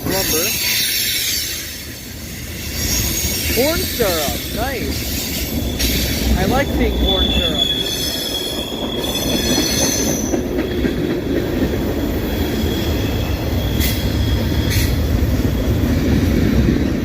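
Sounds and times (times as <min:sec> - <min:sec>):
freight train wheels rumbling: 0:00.0 - 0:17.0
high-pitched wheel squeal: 0:00.1 - 0:04.3, 0:07.0 - 0:10.4, 0:12.3 - 0:15.8
hissing screeches: 0:00.1 - 0:10.4.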